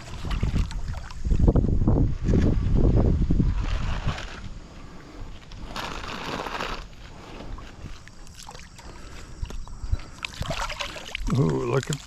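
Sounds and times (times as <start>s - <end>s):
water splashing around kayak: 0.0s - 2.8s, 3.4s - 12.0s
water drips: 8.1s - 12.0s.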